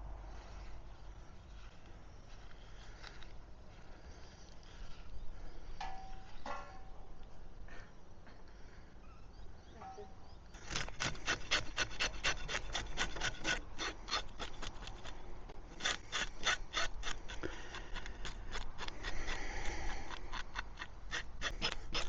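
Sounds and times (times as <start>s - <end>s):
knife scraping fish scales: 10.7s - 15.2s, 15.8s - 22.0s.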